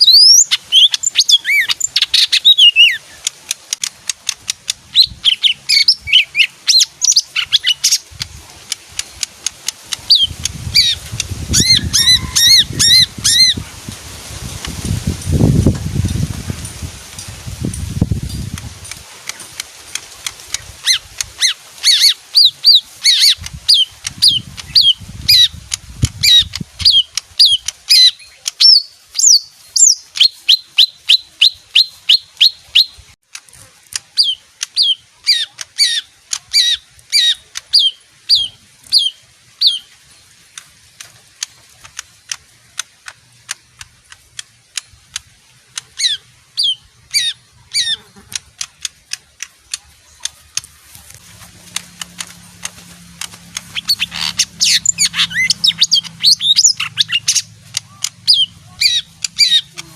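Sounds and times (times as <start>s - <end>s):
bird whistling sharp notes: 53.6s - 59.7s.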